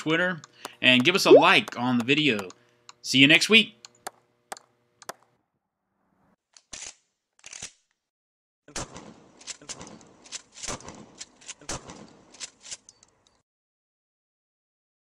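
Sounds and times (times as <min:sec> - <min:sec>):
sharp clicks: 0:00.4 - 0:03.0.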